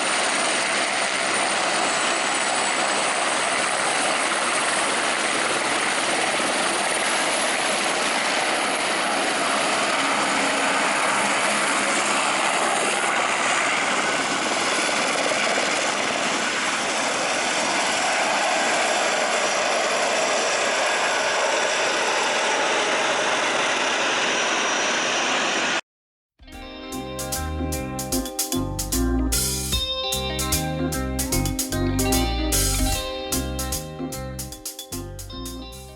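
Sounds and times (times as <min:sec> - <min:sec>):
helicopter rotor and engine: 0:00.0 - 0:25.8.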